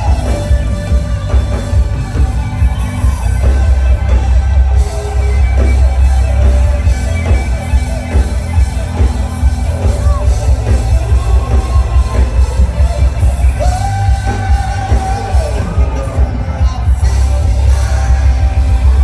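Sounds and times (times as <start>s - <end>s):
heavy bass line: 0.0s - 19.0s
live band playing loud music: 0.0s - 19.0s
steady drum beat: 0.0s - 19.0s.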